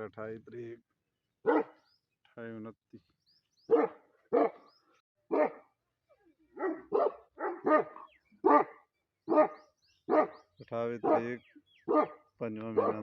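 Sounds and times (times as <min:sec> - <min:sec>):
dog barking: 0:01.4 - 0:01.8, 0:03.7 - 0:04.7, 0:05.3 - 0:05.7, 0:06.5 - 0:10.4, 0:11.0 - 0:13.0.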